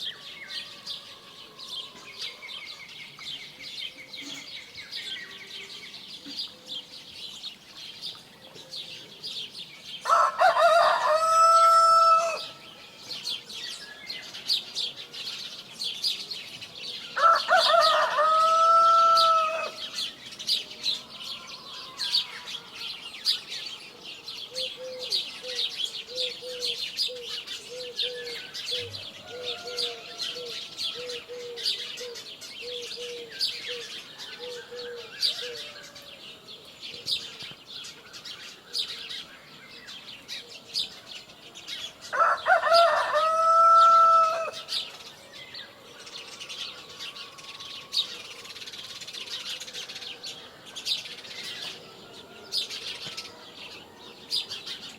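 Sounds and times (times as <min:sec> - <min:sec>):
small birds chirping: 0:00.0 - 0:54.9
rooster crowing: 0:10.0 - 0:12.6, 0:17.2 - 0:19.9, 0:28.7 - 0:31.3, 0:42.1 - 0:44.7.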